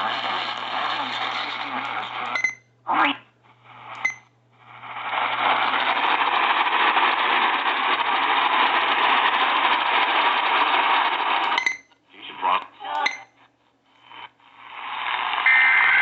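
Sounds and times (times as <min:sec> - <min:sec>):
radio static hiss: 0:00.0 - 0:02.4, 0:04.7 - 0:11.5, 0:14.1 - 0:16.0.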